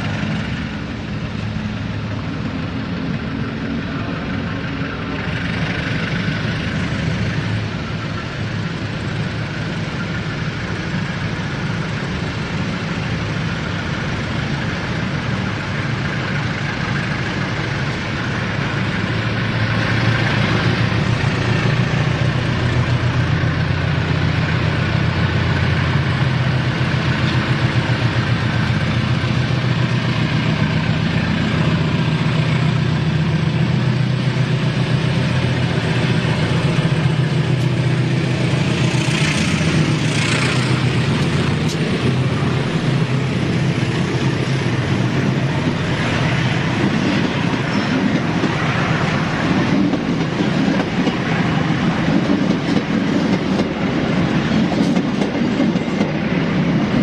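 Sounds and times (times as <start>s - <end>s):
diesel engine running at low revs: 0.0s - 51.3s.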